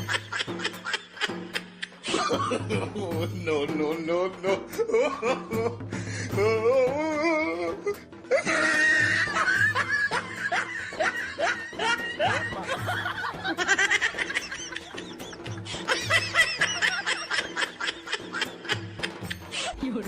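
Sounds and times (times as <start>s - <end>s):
background music with low beat: 0.0s - 20.0s.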